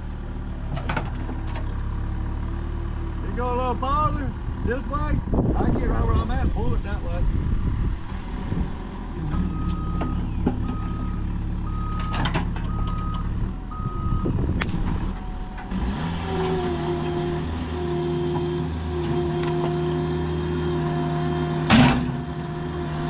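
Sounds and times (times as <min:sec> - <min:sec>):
diesel construction machine running: 0:00.0 - 0:23.0
backup alarm beeping: 0:09.5 - 0:14.4.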